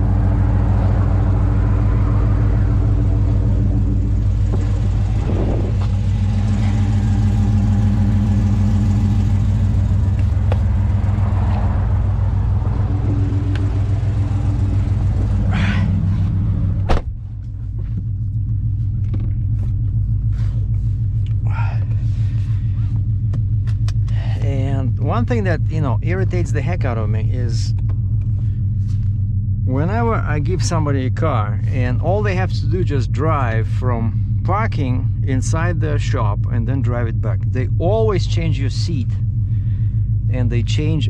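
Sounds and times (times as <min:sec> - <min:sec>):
car engine idling: 0:00.0 - 0:41.0
car door shutting: 0:15.3 - 0:17.2.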